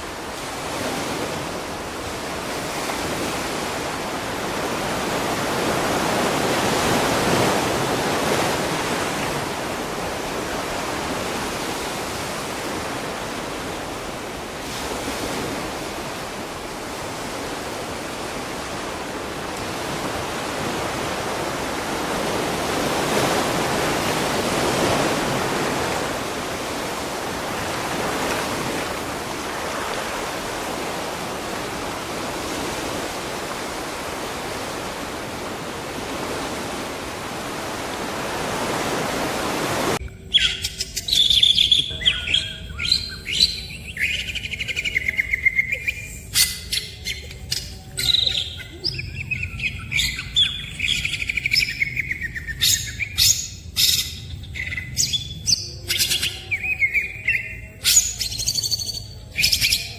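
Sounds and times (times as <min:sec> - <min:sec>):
birds chirping and whistling: 0:40.3 - 0:59.9.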